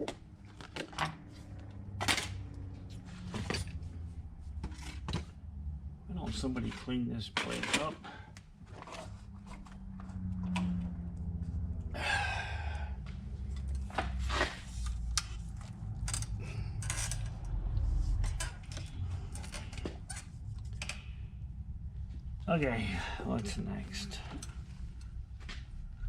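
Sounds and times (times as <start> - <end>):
breathy exhale: 12.0 - 13.0.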